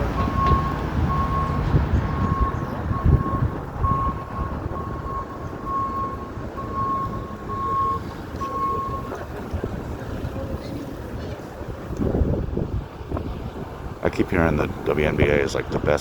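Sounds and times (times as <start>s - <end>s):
vehicle backup alarm beeping: 0.0s - 9.8s
street traffic rumble: 0.0s - 16.0s.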